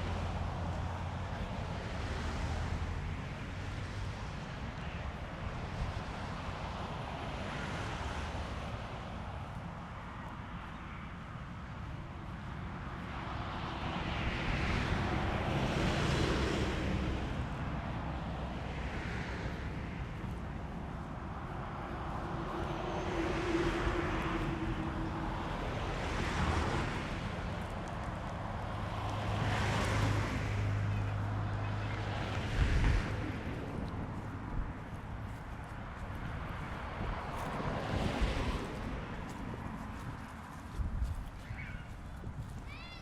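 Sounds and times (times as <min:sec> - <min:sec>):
gusty wind on microphone: 0:12.6 - 0:43.0.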